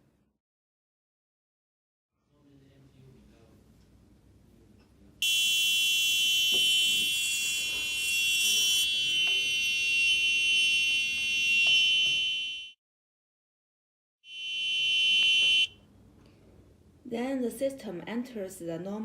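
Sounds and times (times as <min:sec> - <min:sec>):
alarm buzzer high-pitched tone: 0:05.2 - 0:12.8, 0:14.3 - 0:15.8.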